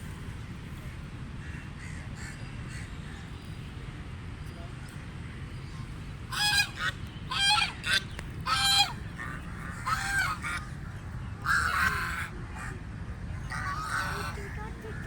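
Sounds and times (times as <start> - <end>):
low background noise: 0.0 - 15.0
waterfowl calling: 6.3 - 10.8, 11.4 - 12.3.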